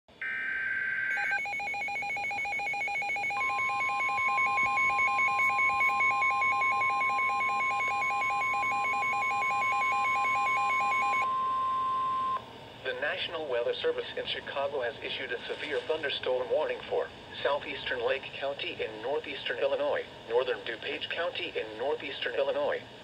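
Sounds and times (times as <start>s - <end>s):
pulsing two-tone alarm: 0.2s - 12.4s.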